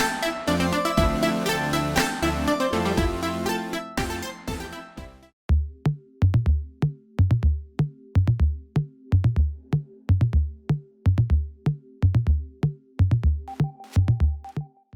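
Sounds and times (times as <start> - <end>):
drum machine beat: 0.0 - 3.4
deep kick drum: 5.5 - 8.6.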